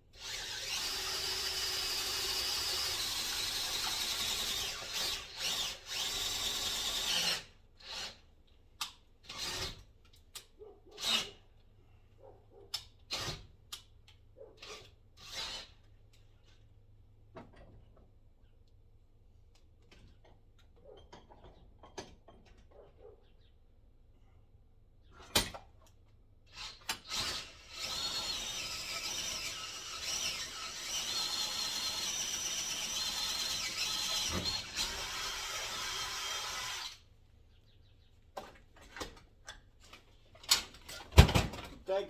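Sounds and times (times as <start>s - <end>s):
power drill whining: 0.2s - 8.2s, 26.5s - 37.0s.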